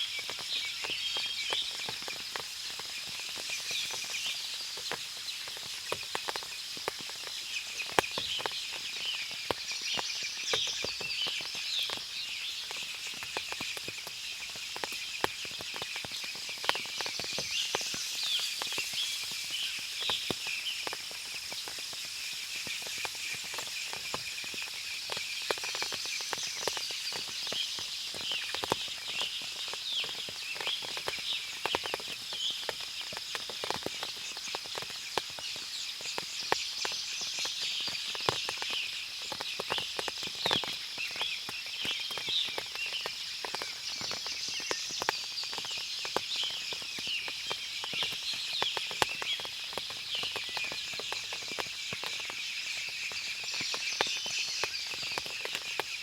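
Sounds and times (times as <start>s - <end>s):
birds chirping: 0.0s - 56.0s
steady high-pitched hiss: 0.0s - 56.0s
water dripping clicks: 0.1s - 56.0s.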